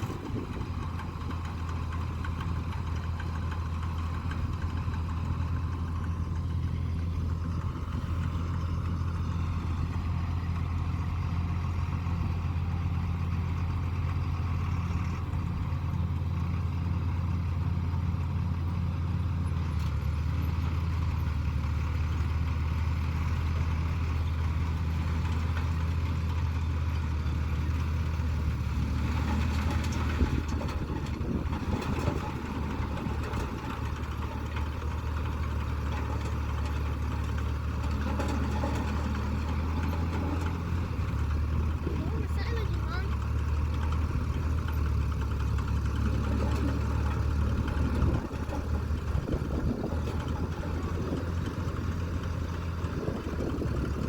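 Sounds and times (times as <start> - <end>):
tractor engine running: 0.0 - 54.0.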